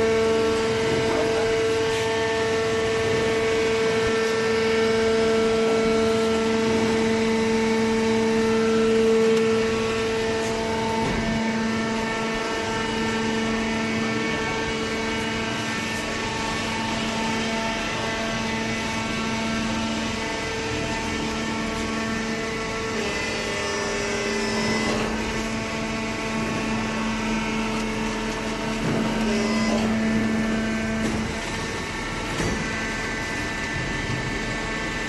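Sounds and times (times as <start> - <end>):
hydraulic pump motor humming: 0.0 - 35.0.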